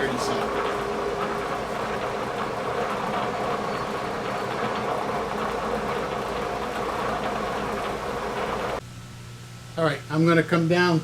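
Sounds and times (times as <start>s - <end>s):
milling machine humming: 0.0s - 8.8s.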